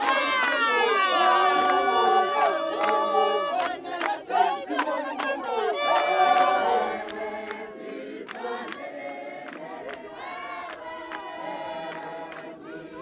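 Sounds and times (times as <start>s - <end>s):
group of voices singing: 0.0s - 13.0s
hands clapping the beat: 0.0s - 13.0s.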